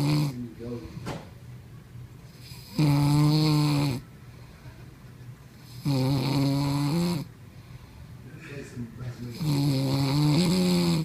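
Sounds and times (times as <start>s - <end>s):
man snoring: 0.0s - 0.4s, 2.4s - 4.0s, 5.7s - 7.3s, 9.2s - 11.0s.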